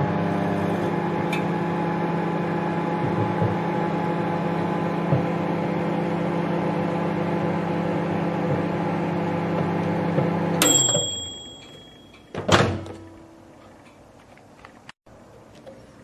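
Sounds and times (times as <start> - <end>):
microwave oven humming: 0.0 - 13.6
microwave door clunk: 10.6 - 12.9.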